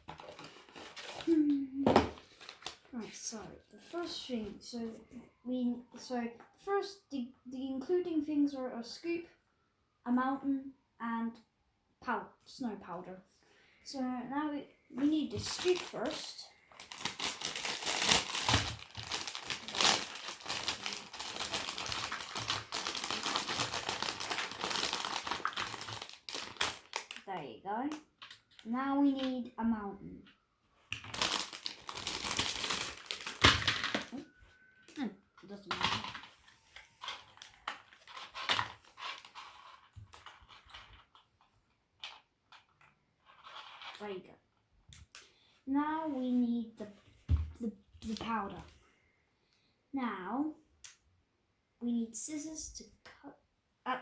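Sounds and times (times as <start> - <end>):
plastic packaging crinkling: 15.4 - 27.3, 30.9 - 34.3, 36.8 - 41.1.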